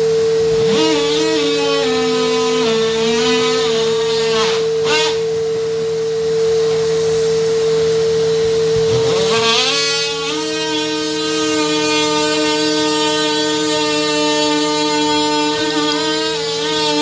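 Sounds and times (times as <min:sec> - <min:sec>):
oscillating multi-tool cutting: 0:00.0 - 0:05.4, 0:08.2 - 0:17.0.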